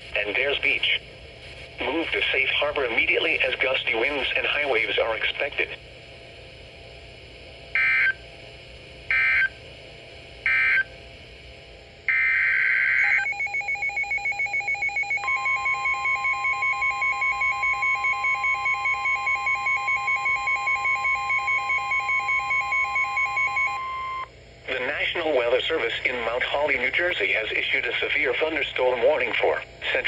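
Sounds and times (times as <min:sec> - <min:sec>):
steady warning alarm tone: 0:07.7 - 0:08.2, 0:09.1 - 0:09.6, 0:10.4 - 0:10.9, 0:12.1 - 0:24.3.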